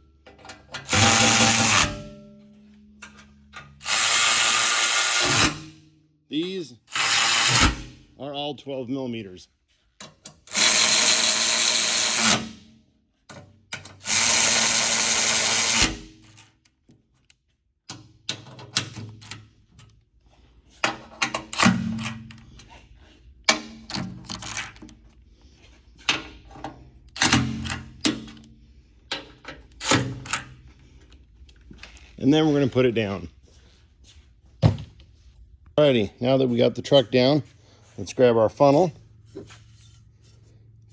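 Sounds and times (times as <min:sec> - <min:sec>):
clicks of tools and bolts: 0:00.2 - 0:02.1, 0:03.0 - 0:04.2, 0:10.0 - 0:10.6, 0:13.3 - 0:14.1, 0:16.3 - 0:20.0, 0:20.8 - 0:22.7, 0:23.4 - 0:25.2, 0:26.0 - 0:32.1
power driver running bolts: 0:00.4 - 0:02.0, 0:03.6 - 0:05.6, 0:06.9 - 0:08.0, 0:10.4 - 0:12.6, 0:13.8 - 0:16.4, 0:21.3 - 0:22.3, 0:27.1 - 0:28.4, 0:29.2 - 0:30.5.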